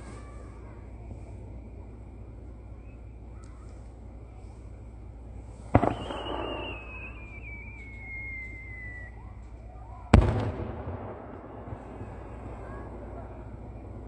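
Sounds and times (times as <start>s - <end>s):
firework shells bursting: 5.7s - 9.1s
high falling whistle: 5.8s - 9.3s.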